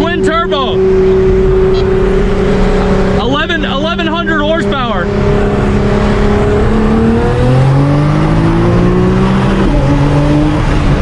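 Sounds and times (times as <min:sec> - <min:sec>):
car engine revving at full throttle: 0:00.0 - 0:11.0.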